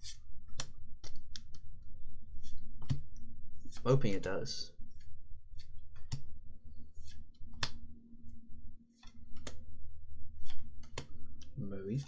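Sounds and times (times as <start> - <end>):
faint steady hum: 0.0 - 12.0
trading cards clicking and snapping: 5.0 - 6.3, 7.0 - 7.8, 9.0 - 9.6.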